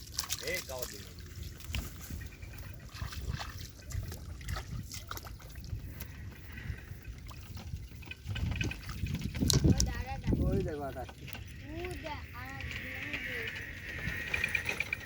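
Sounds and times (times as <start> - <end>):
shallow water sloshing and splashing: 0.0 - 15.0.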